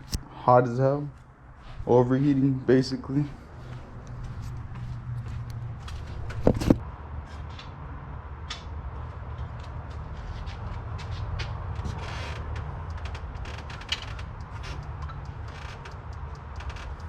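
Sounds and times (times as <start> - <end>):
light clicks and rattles: 8.5 - 17.0.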